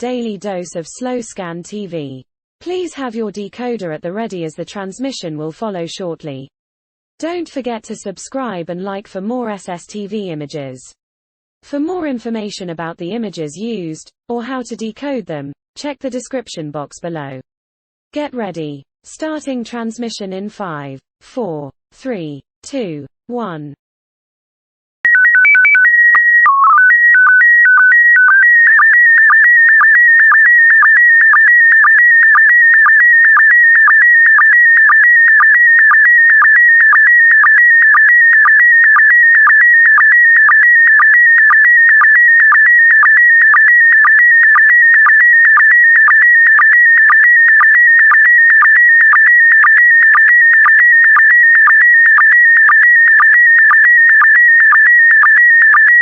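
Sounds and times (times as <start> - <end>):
steady beeps at different pitches: 25.1 - 56.0.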